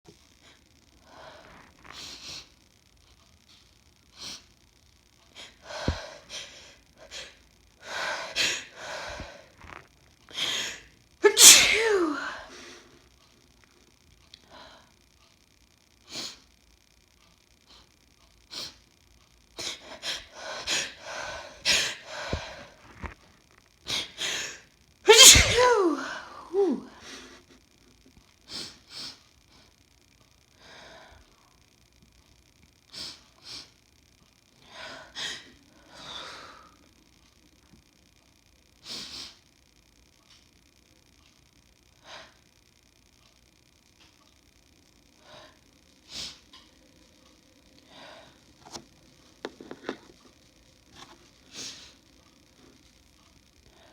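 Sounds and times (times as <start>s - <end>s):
woman sniffing: 10.3s - 12.7s, 23.9s - 27.5s
woman sneezing: 10.4s - 12.6s, 23.9s - 27.1s.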